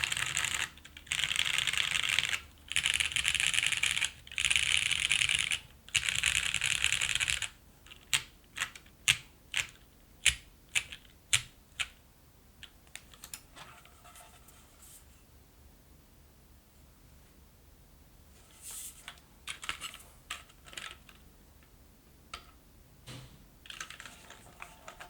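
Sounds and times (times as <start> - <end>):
mechanical keyboard typing: 0.0 - 12.0, 19.5 - 21.2, 23.7 - 25.0.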